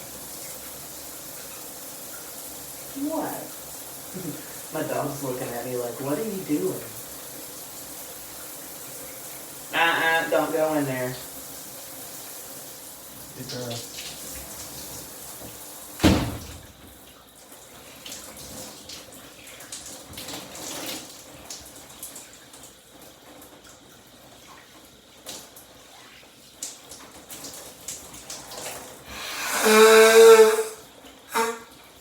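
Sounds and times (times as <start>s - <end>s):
shower water running: 0.0s - 32.0s
honking nose blow: 29.1s - 31.7s.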